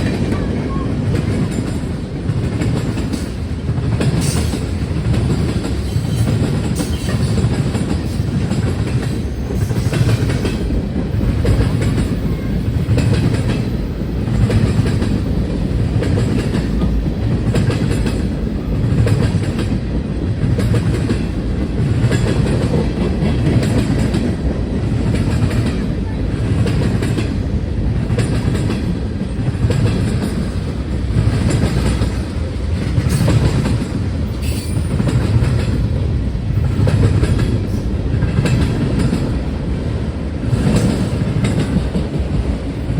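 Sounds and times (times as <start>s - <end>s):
train wheels clacking over rail joints: 0.0s - 42.9s.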